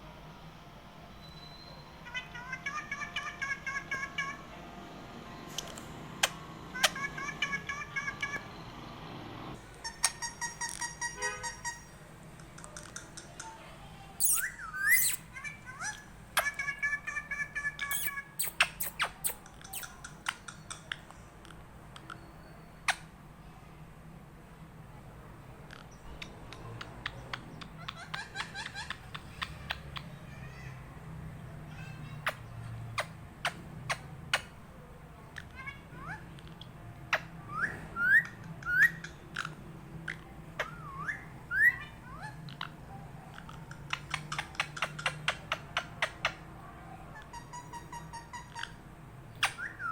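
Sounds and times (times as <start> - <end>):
parrot chirping and clicking: 5.6 - 8.4, 9.7 - 11.8, 12.4 - 13.6, 14.2 - 22.3, 25.7 - 30.2, 36.4 - 46.4, 49.4 - 49.9
parrot whistling: 14.2 - 15.2, 37.5 - 39.1, 40.6 - 42.2, 49.4 - 49.9.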